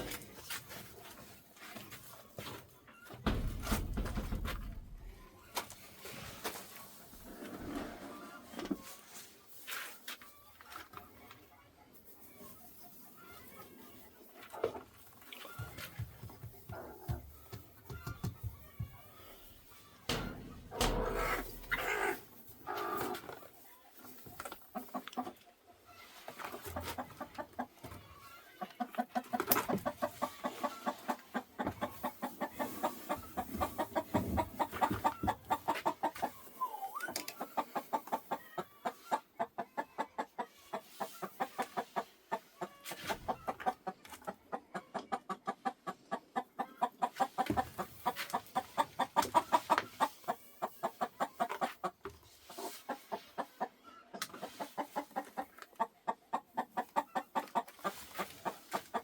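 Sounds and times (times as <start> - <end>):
hen clucking rapidly: 20.1 - 23.1, 28.8 - 52.0.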